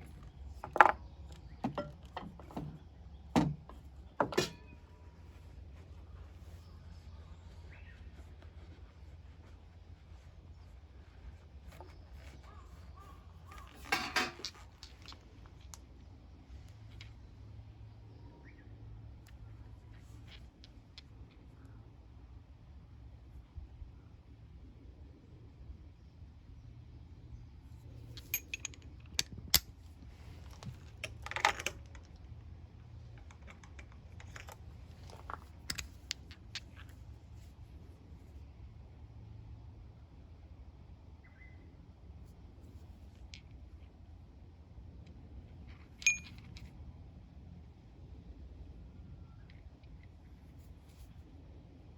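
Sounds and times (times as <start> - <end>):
low steady hum: 0.0 - 51.9
sharp clicks and metallic knocks: 0.1 - 4.8
metallic clinks: 28.2 - 29.7, 46.0 - 46.7.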